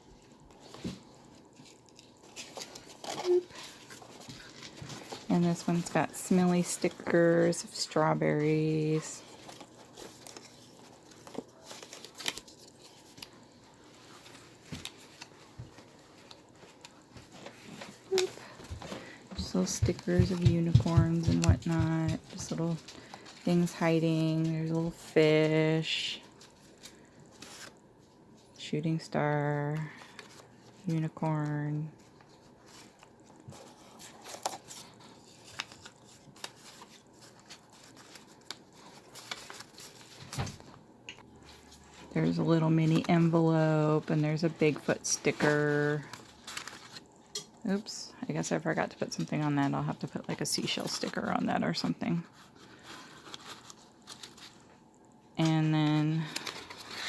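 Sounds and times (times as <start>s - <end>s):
paper rustling: 0.0s - 47.8s, 48.4s - 54.9s, 55.5s - 57.0s.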